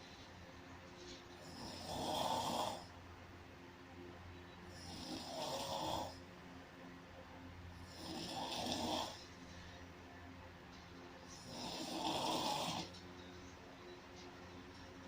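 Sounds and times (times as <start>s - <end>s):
faint low hum: 0.0s - 15.0s
loud snoring: 1.4s - 2.9s, 4.7s - 6.2s, 7.8s - 9.3s, 11.4s - 13.0s.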